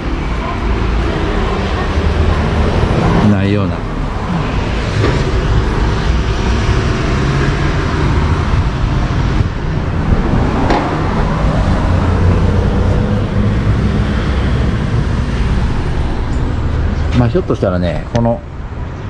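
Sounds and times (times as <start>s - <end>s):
vehicle rumble: 0.0s - 19.0s
sharp knock: 10.6s - 11.2s.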